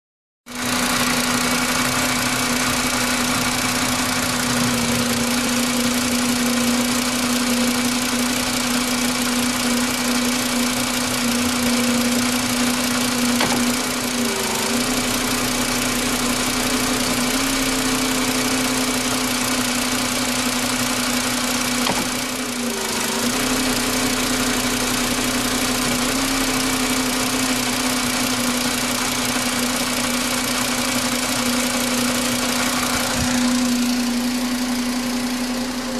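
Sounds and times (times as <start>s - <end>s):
car engine idling: 0.5s - 35.9s
sharp pop: 13.4s - 13.8s, 21.8s - 22.2s.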